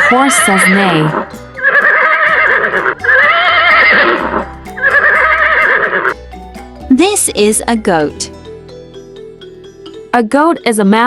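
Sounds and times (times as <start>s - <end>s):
horse whinnying: 0.0s - 6.2s.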